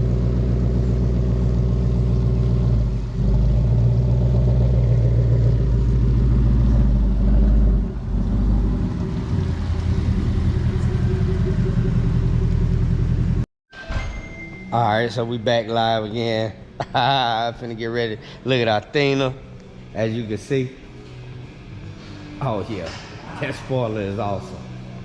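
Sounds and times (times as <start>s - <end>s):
car engine rumbling: 0.0s - 13.5s.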